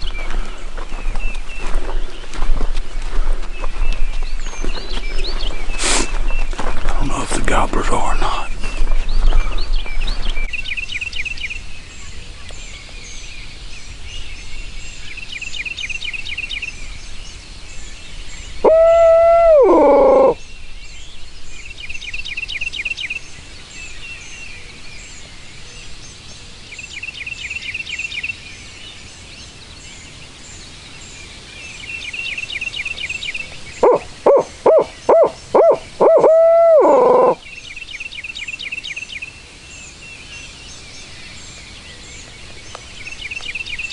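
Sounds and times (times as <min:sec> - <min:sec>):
owl hooting: 0:18.6 - 0:20.4, 0:33.8 - 0:37.4.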